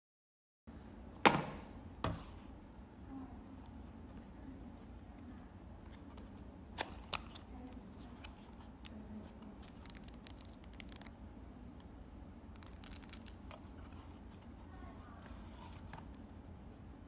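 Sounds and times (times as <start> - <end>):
steady low hum: 0.7 - 17.0.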